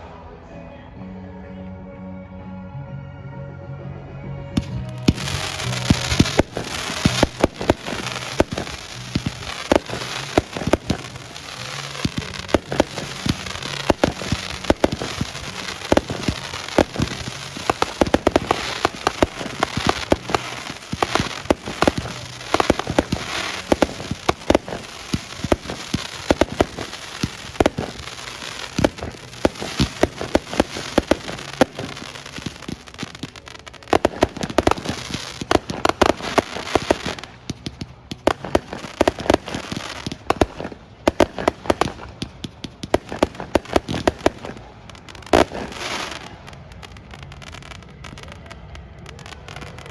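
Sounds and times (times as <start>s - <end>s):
fireworks bangs: 4.6s - 49.9s
fireworks crackle: 4.6s - 49.9s.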